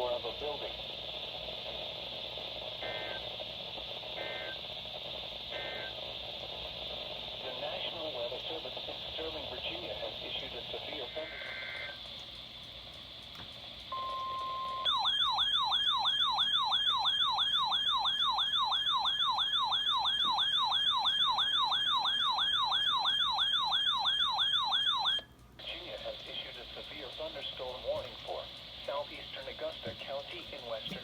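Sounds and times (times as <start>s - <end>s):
yelp siren: 14.0s - 25.2s.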